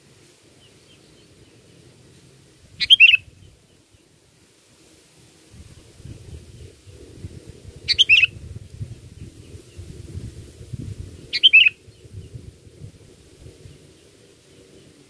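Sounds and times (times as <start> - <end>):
bulbul calling: 2.8 - 3.5, 7.9 - 8.4, 11.3 - 11.8.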